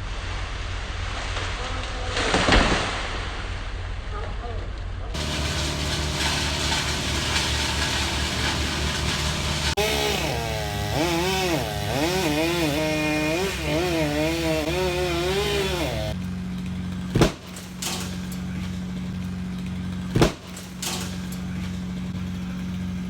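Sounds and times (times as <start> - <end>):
chainsaw cutting: 5.2 - 23.0
sharp knocks: 17.1 - 18.1, 20.2 - 21.1.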